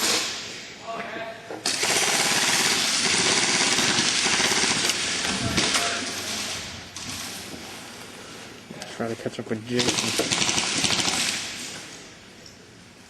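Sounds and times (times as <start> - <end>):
airsoft gun firing full auto: 1.7 - 5.9, 9.8 - 11.5.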